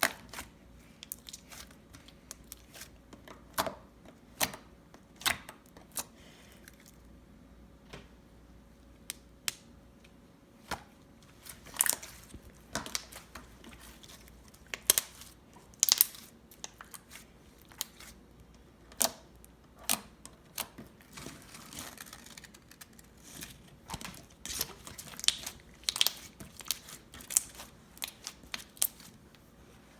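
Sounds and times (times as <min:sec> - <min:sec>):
slime popping and crackling: 0:11.4 - 0:18.0, 0:19.8 - 0:29.1.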